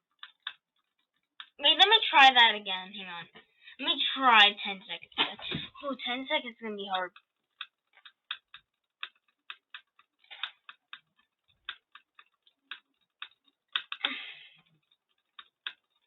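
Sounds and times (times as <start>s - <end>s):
computer mouse clicking: 0.1s - 0.6s, 7.0s - 16.0s.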